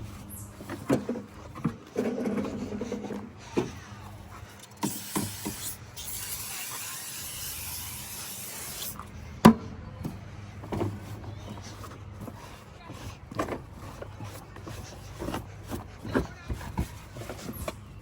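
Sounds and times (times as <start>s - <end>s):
spray can hissing: 4.8s - 9.0s.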